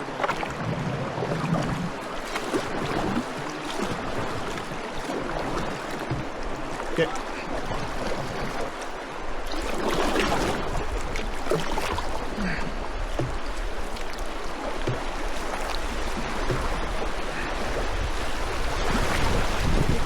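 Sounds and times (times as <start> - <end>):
river water rushing and splashing: 0.0 - 20.0.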